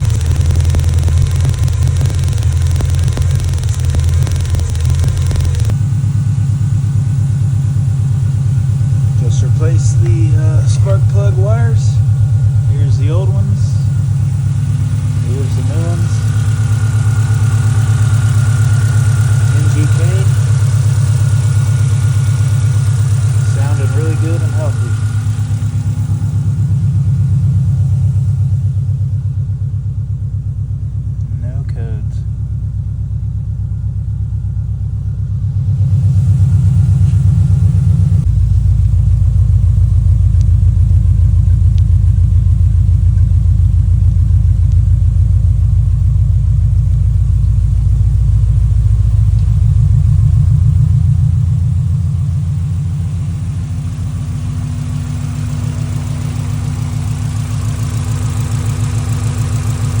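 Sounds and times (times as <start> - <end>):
car engine idling: 0.0 - 60.0.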